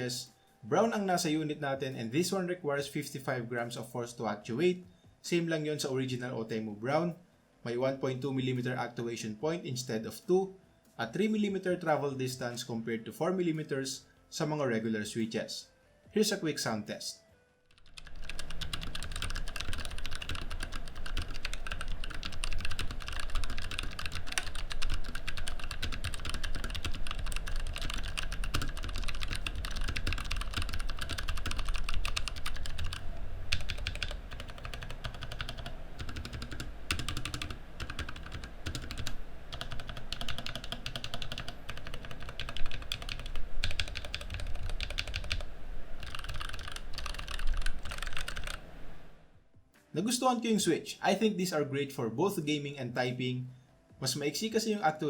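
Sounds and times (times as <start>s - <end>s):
typing on mechanical keyboard: 17.7s - 48.6s.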